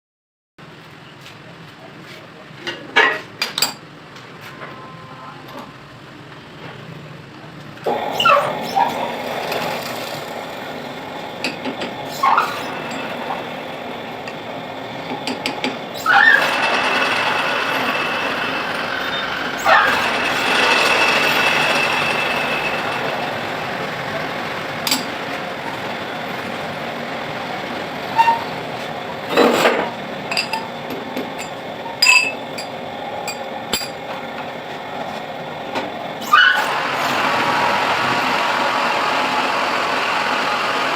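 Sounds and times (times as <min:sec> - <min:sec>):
metal lathe machining: 0:07.8 - 0:40.9
short squeaks: 0:07.9 - 0:09.1, 0:12.0 - 0:13.5, 0:16.0 - 0:23.0, 0:36.2 - 0:37.2
thin whine: 0:07.9 - 0:29.8.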